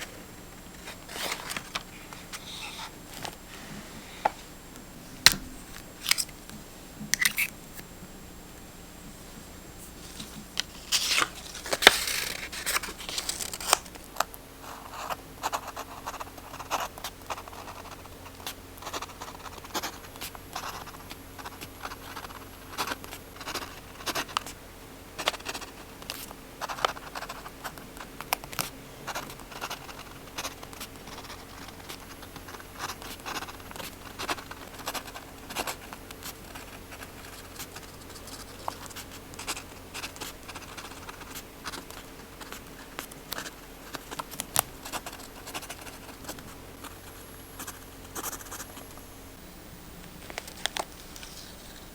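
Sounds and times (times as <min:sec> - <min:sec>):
paper scratches and rustles: 0:00.0 - 0:04.3, 0:09.8 - 0:24.6, 0:25.2 - 0:48.8, 0:50.2 - 0:51.9
loud paper rasp: 0:00.7 - 0:03.0, 0:10.7 - 0:14.0.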